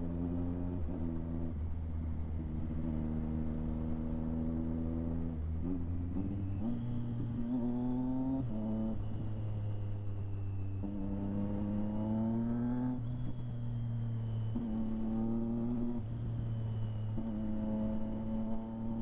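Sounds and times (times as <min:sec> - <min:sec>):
motorcycle engine revving: 0:14.6 - 0:16.5.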